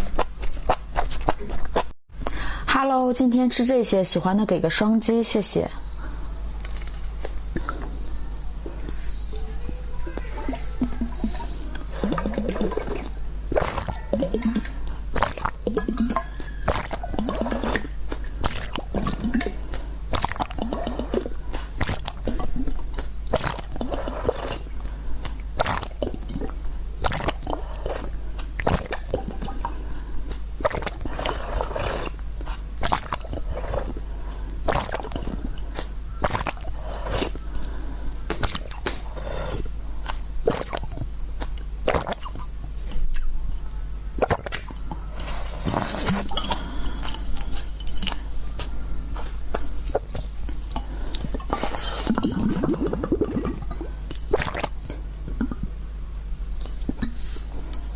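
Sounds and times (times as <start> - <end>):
crunching and wet chewing: 0.0 - 1.9, 10.2 - 43.3.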